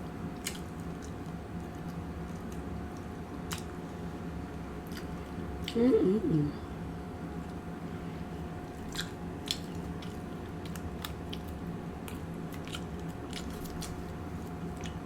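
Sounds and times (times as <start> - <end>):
faint steady hum: 0.0 - 15.0
chewing with wet mouth clicks: 0.3 - 5.8, 8.6 - 15.0.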